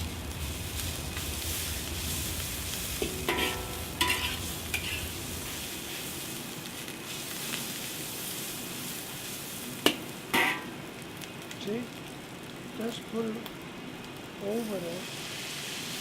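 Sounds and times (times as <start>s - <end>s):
noodles sizzling in a wok: 0.0s - 16.0s
metal spatula scraping a wok: 2.9s - 6.2s, 10.4s - 10.7s.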